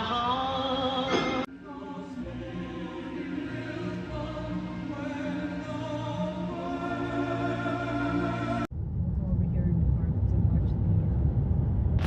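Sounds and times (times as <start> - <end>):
voices singing held notes: 0.0 - 8.7
steady low bass: 7.3 - 12.0.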